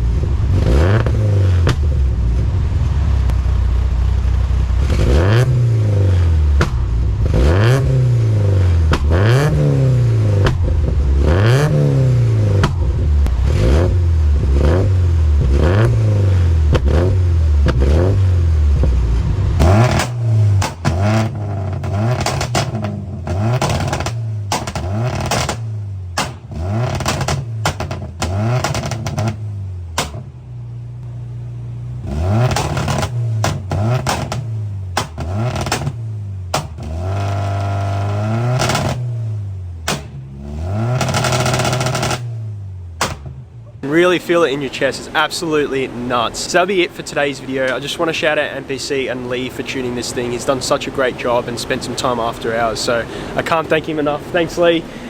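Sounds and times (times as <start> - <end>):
exhaust pops and bangs: 0.0 - 31.2, 31.9 - 44.0
car engine revving: 0.0 - 47.1.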